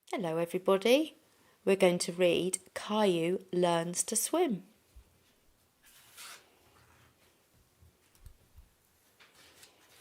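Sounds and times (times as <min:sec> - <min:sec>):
paper rustling: 0:05.8 - 0:07.4, 0:09.0 - 0:10.0.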